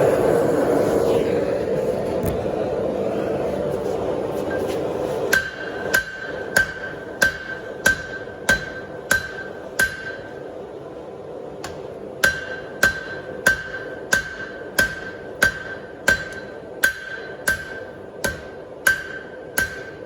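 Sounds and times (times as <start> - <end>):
hammer striking steel on anvil: 5.3 - 10.5, 11.6 - 20.0
anvil ringing: 5.4 - 10.4, 12.2 - 20.0.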